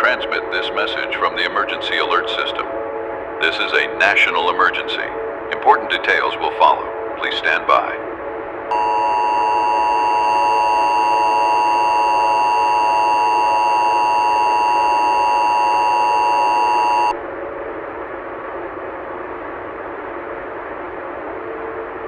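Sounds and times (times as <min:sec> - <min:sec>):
two-tone attention signal: 0:08.7 - 0:17.1.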